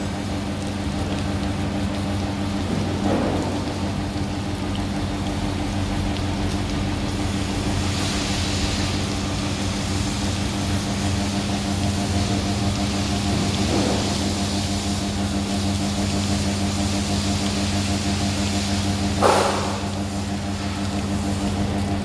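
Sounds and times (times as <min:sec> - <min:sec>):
welding machine humming: 0:00.0 - 0:22.0
noisy hiss: 0:07.4 - 0:21.5.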